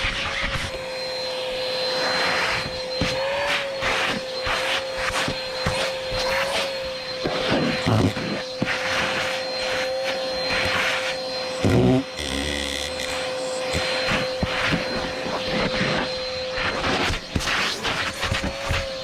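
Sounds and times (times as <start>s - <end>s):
vacuum cleaner motor whine: 0.0s - 19.0s.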